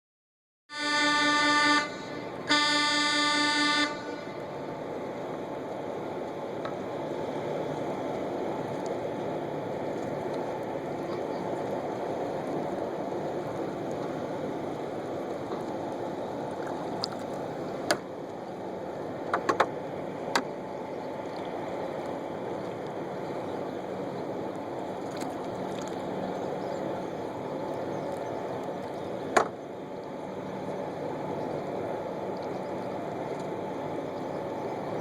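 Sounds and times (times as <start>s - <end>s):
steady low rumble: 3.8s - 35.0s
paddle knocking on hull: 19.3s - 20.5s, 29.3s - 29.6s.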